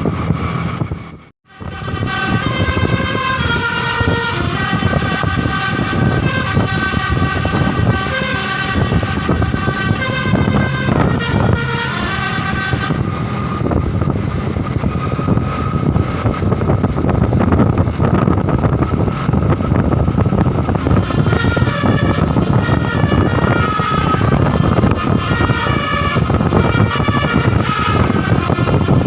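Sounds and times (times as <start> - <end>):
bus engine: 0.0 - 29.0
road noise: 0.0 - 29.0
musical air horn: 1.5 - 13.6, 20.9 - 29.0.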